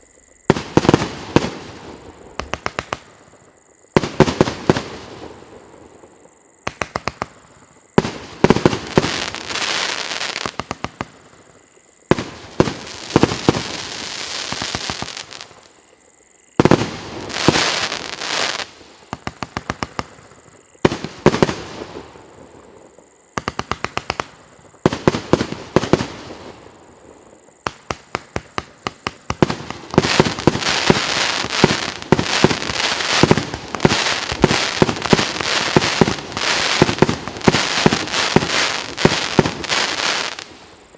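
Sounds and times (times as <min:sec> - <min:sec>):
firework crackle: 0:12.1 - 0:15.8, 0:16.6 - 0:40.9
fireworks firing rapid reports: 0:23.4 - 0:26.3, 0:27.7 - 0:40.5.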